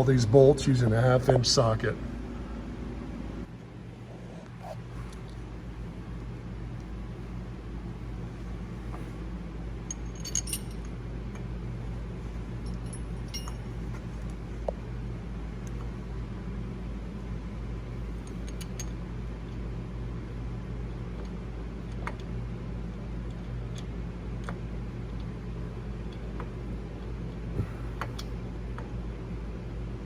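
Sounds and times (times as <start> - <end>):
steady low hum: 0.0 - 30.0
metallic clinks of wrench and bolts: 9.9 - 10.9, 12.6 - 13.7.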